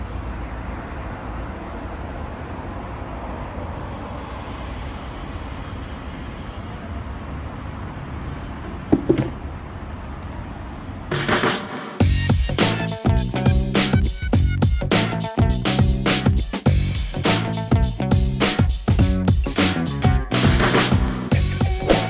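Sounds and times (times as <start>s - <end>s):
brief knock: 8.9s - 9.4s.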